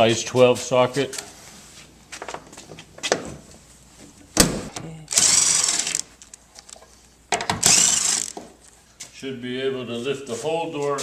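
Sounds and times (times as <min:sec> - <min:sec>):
power drill whining: 0:05.1 - 0:06.1, 0:07.5 - 0:08.4.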